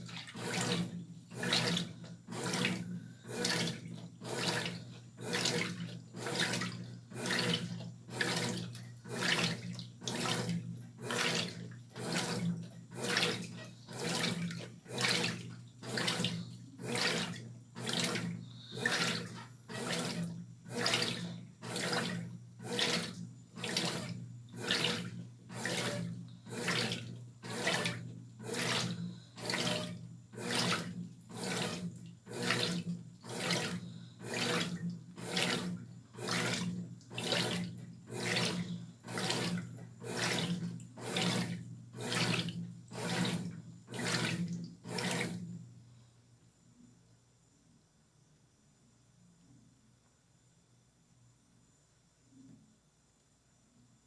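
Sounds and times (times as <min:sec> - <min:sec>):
water and laundry swishing: 0:00.0 - 0:45.5
washing machine agitating laundry: 0:00.0 - 0:45.6
motor humming: 0:22.6 - 0:36.6.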